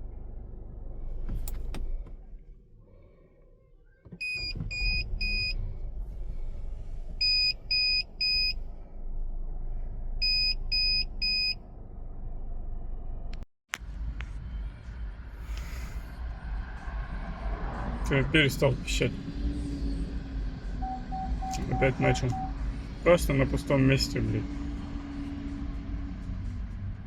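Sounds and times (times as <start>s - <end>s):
low engine rumble: 0.0s - 27.0s
short high warning beeps: 20.8s - 22.5s.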